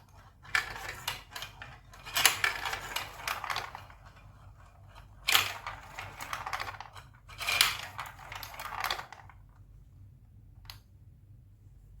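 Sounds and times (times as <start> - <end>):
marbles clattering through plastic track: 0.1 - 9.4.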